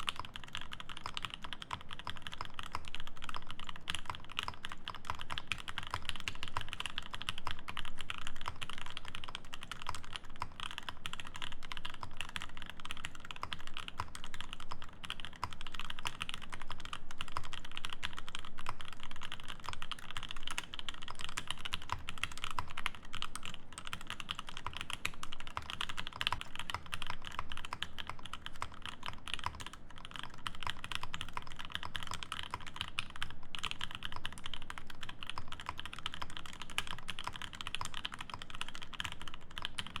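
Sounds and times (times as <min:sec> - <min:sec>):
mechanical keyboard typing: 0:00.0 - 0:40.0.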